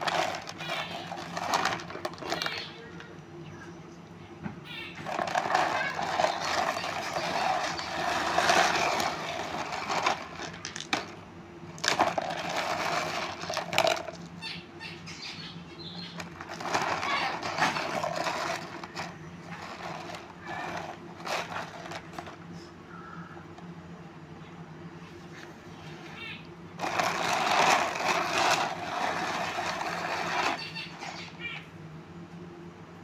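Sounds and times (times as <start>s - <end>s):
stones rattling and scraping: 0.0s - 2.7s, 5.0s - 14.3s, 16.1s - 22.4s, 26.8s - 31.2s
stones clicking together: 9.9s - 11.1s.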